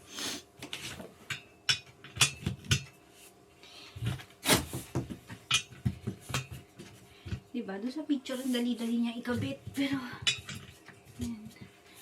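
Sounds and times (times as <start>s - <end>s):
chair parts knocking and clicking: 0.6s - 3.0s, 4.0s - 7.4s, 9.2s - 11.7s.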